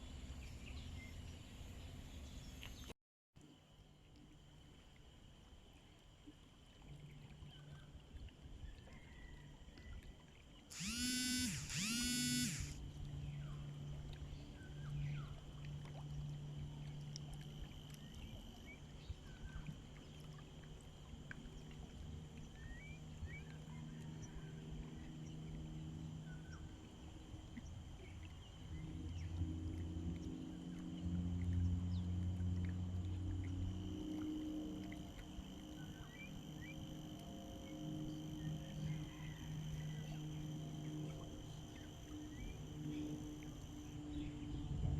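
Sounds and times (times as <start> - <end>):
low hum: 9.8 - 44.9
steady high tone: 10.7 - 12.8.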